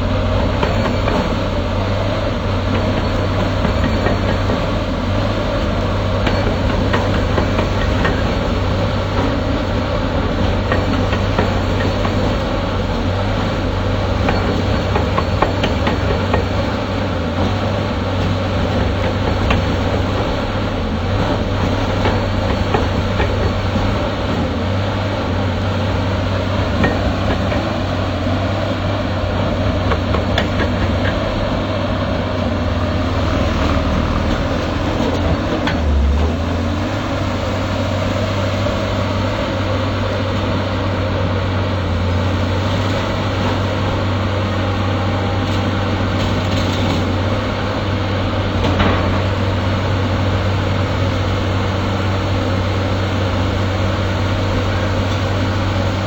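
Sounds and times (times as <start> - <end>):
diesel engine running: 0.0 - 56.0
metallic clanks and knocks: 29.4 - 31.6, 48.6 - 49.5.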